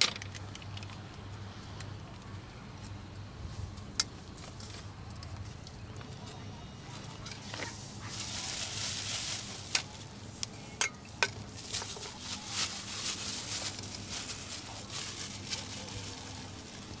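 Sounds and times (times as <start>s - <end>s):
soft scraping and rustling: 3.4s - 10.5s, 11.4s - 17.0s.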